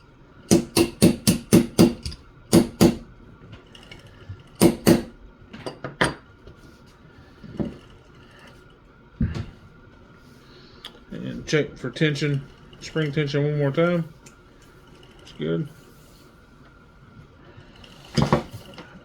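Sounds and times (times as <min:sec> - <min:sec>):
small hammer tapping metal pin: 0:00.5 - 0:03.0, 0:04.6 - 0:05.1.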